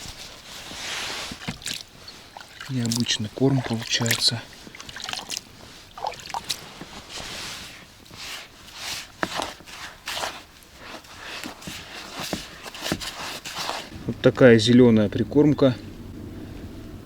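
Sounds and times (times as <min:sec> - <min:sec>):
hands kneading wet bait: 0:00.0 - 0:14.8.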